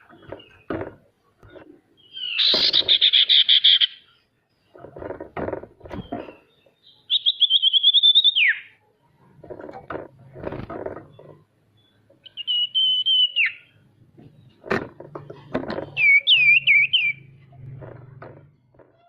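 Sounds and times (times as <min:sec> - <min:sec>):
short knocks and rustles: 0:00.0 - 0:01.8, 0:04.7 - 0:06.5, 0:09.2 - 0:11.5, 0:14.2 - 0:16.0, 0:17.5 - 0:19.0
songbird whistling: 0:02.0 - 0:04.0, 0:06.8 - 0:08.8, 0:11.8 - 0:13.8, 0:16.0 - 0:17.3.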